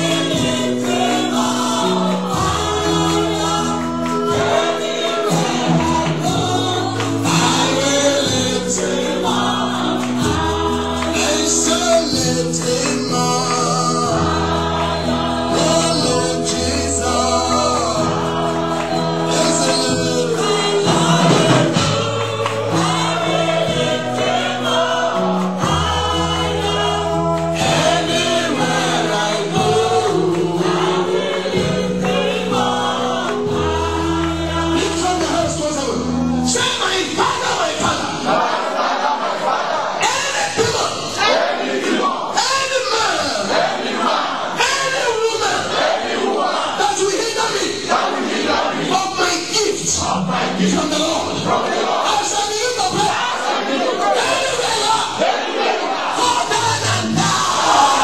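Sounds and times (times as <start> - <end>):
instrumental accompaniment: 0.0 - 40.0
choir singing gospel song: 0.0 - 58.0.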